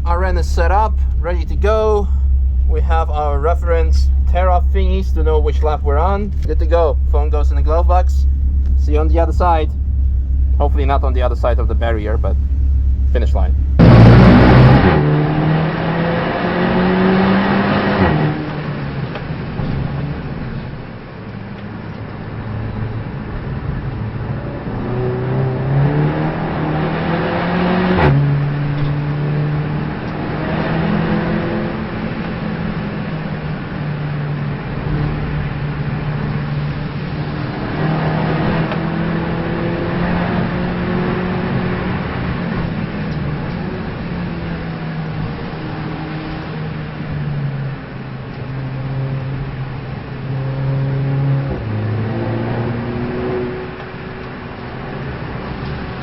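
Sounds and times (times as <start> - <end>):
race car engine accelerating: 0.0 - 20.7, 21.4 - 56.0
gear shift click: 4.1 - 13.8.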